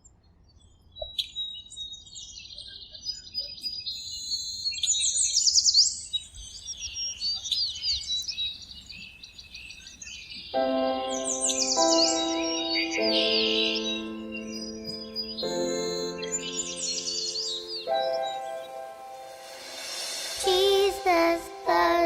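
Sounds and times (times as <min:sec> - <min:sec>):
birds chirping and singing: 0:02.2 - 0:22.0.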